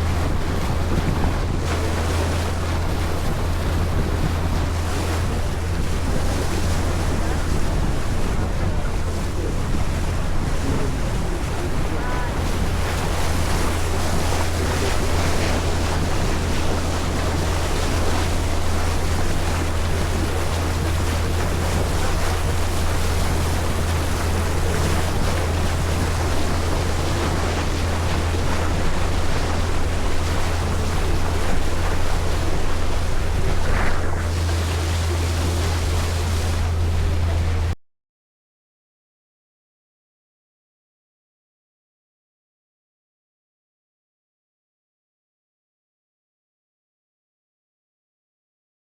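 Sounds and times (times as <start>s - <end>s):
low engine drone: 0.0s - 37.8s
water rushing along hull: 0.0s - 37.8s
wind buffeting microphone: 0.0s - 37.8s.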